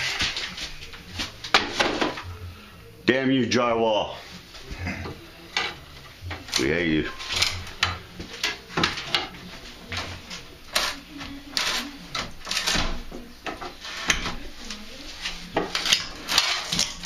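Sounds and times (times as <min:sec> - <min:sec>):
wall boards breaking and clattering: 0:01.5 - 0:02.2, 0:15.6 - 0:17.0.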